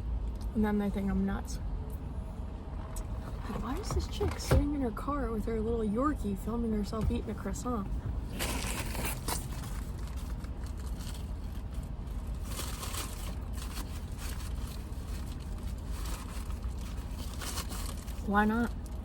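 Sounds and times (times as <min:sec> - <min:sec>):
low car interior hum: 0:00.0 - 0:19.0
croissant crinkling and crunching: 0:08.3 - 0:19.0.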